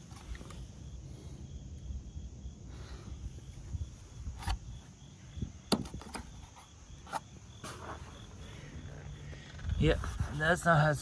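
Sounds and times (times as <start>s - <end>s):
car body parts clicking and knocking: 5.6s - 7.3s.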